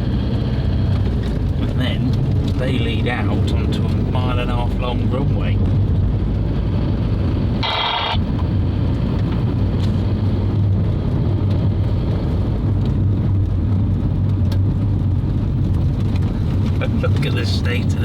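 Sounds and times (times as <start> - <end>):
road rumble: 0.0 - 18.0
van engine hum: 0.0 - 18.0.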